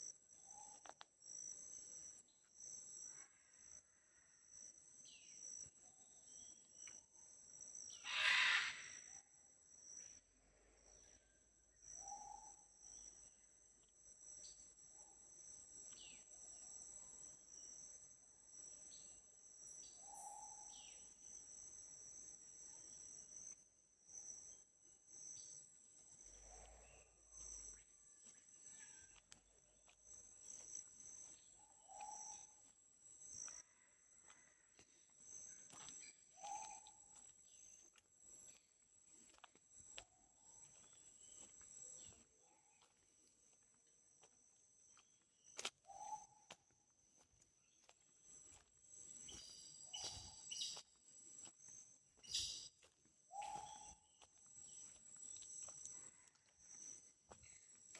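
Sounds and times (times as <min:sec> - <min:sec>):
insects calling high-pitched: 0:07.8 - 0:09.2, 0:35.3 - 0:37.9, 0:45.0 - 0:57.6.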